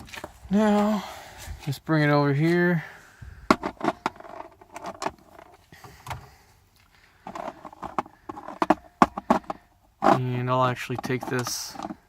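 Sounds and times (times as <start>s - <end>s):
metal lock parts clicking and rattling: 3.6s - 6.2s, 7.3s - 12.0s.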